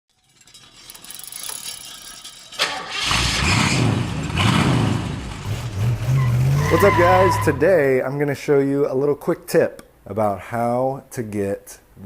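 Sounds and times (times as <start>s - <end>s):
car engine starting and revving: 2.8s - 7.6s.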